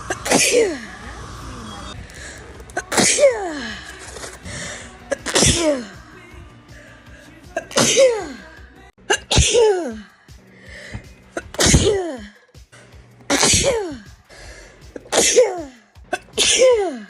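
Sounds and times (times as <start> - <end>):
person sneezing: 0.0 - 0.9, 2.8 - 4.3, 5.1 - 6.0, 7.6 - 8.5, 9.1 - 10.1, 11.3 - 12.4, 13.3 - 14.2, 14.9 - 17.0.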